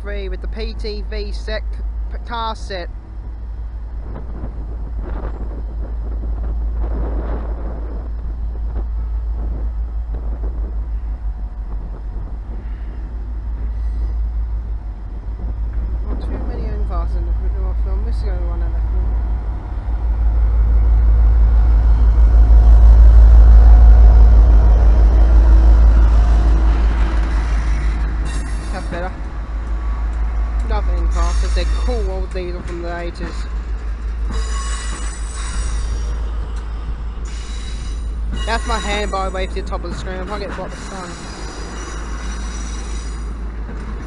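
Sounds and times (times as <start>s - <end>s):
diesel locomotive engine running: 0.0s - 44.0s
wind buffeting microphone: 2.7s - 40.9s.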